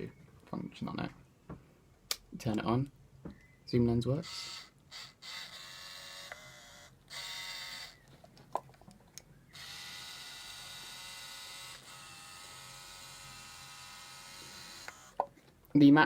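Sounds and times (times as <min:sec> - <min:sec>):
camera power zoom whirring: 0:04.3 - 0:08.0, 0:09.5 - 0:15.2.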